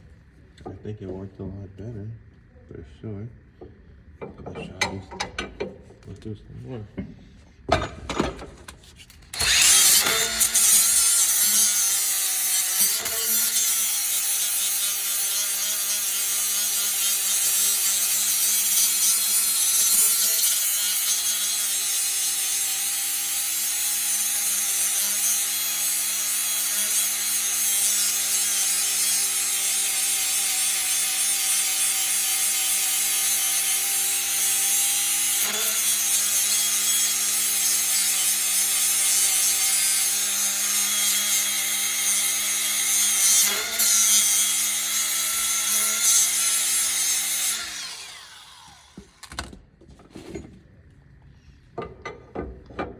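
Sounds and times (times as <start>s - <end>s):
electric grinder grinding metal: 9.3s - 49.4s.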